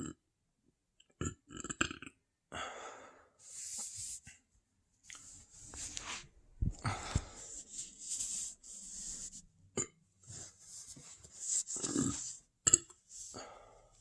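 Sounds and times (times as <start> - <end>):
person burping: 0.0 - 0.2, 1.2 - 2.2, 9.7 - 10.0, 12.6 - 12.9.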